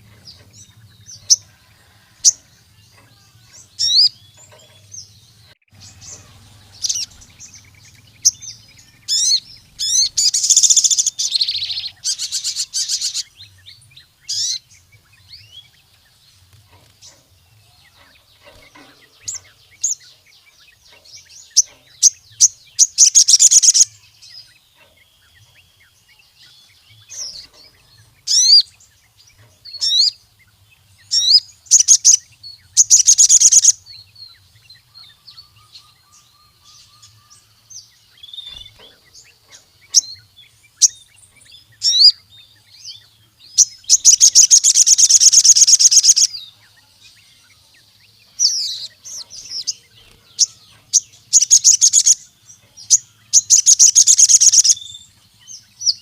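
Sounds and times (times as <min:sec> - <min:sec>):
sunbird chirping and trilling: 0:00.0 - 0:56.0.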